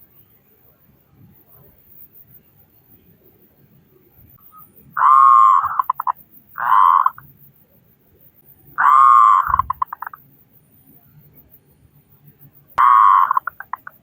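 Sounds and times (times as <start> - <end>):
dove cooing: 5.0 - 7.2, 8.8 - 10.2, 12.8 - 14.0.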